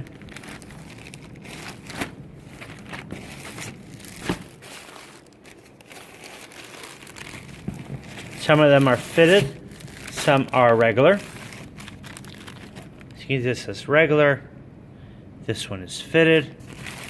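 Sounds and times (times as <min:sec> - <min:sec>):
plastic packaging crinkling: 0:00.0 - 0:13.2, 0:16.6 - 0:17.0.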